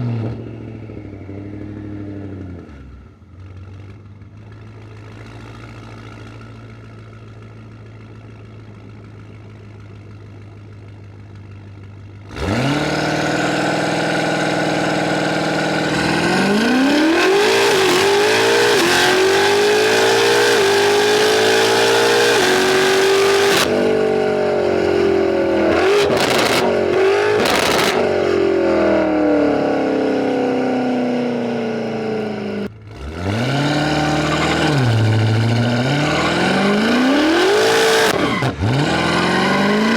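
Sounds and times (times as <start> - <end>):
car engine revving and accelerating: 12.3 - 39.9.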